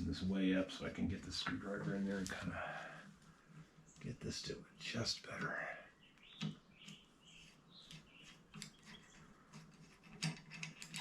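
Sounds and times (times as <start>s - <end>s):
metal squeaks and clicks: 7.8s - 11.0s.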